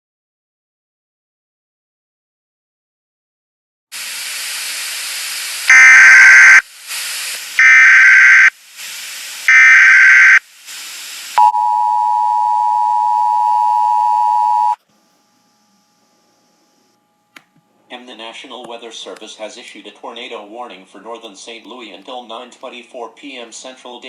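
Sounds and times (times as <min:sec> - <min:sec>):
hiss: 0:03.9 - 0:11.4
screeching digital data bursts: 0:05.7 - 0:06.6, 0:07.6 - 0:08.5, 0:09.5 - 0:10.4.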